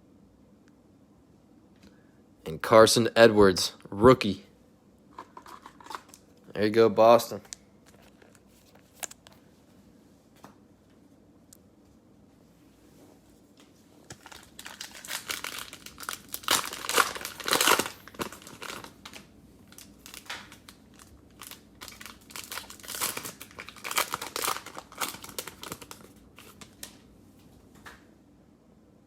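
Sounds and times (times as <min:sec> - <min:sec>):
cellophane wrappers tearing and crinkling: 0:14.1 - 0:27.0.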